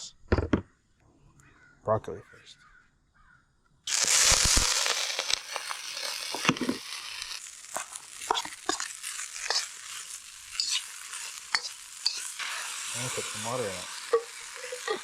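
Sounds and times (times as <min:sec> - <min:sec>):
broccoli sizzling in hot pan: 0:03.9 - 0:15.0
crackling pops: 0:03.9 - 0:15.0
utensil clicking on pan: 0:07.7 - 0:15.0.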